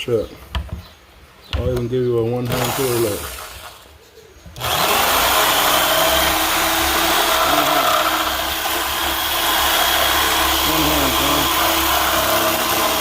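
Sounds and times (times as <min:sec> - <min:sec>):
jigsaw cutting plastic: 0:02.4 - 0:03.9, 0:04.6 - 0:13.0.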